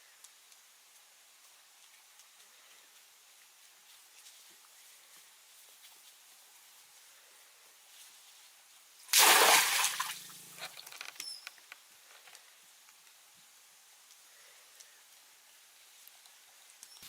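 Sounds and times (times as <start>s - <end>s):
loud water splash: 9.1s - 10.3s
water dripping: 9.1s - 10.9s.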